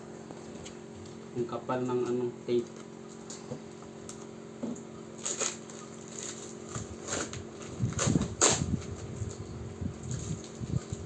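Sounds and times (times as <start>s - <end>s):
packing tape tearing: 5.2s - 9.4s, 10.0s - 11.0s
plastic wrapping crinkling: 5.2s - 9.4s, 10.0s - 11.0s.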